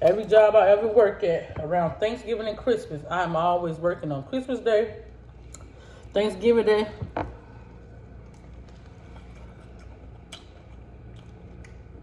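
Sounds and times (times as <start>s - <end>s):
steady low hum: 0.0s - 12.0s
eating noises: 8.2s - 12.0s.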